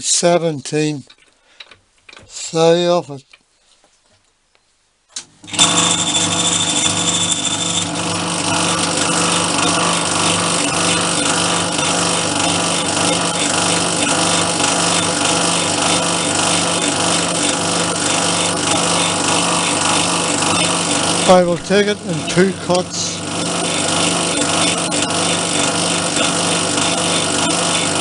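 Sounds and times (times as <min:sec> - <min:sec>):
high whine: 0:05.4 - 0:28.0
metal lathe cutting: 0:05.4 - 0:28.0.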